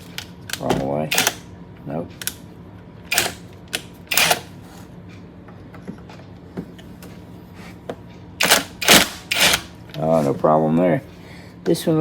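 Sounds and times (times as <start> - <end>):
impact driver burst: 4.1 - 4.5, 8.4 - 9.7.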